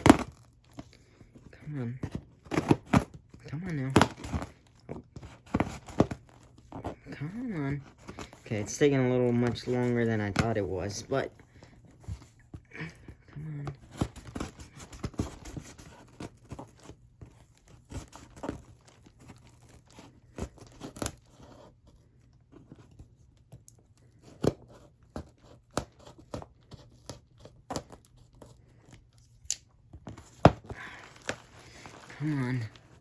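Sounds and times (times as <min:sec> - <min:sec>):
cardboard and tape ripping: 0:13.6 - 0:21.7.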